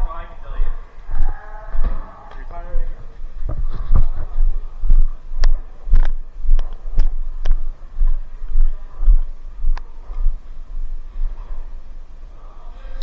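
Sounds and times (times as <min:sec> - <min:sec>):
deep thuds: 0:00.0 - 0:10.4.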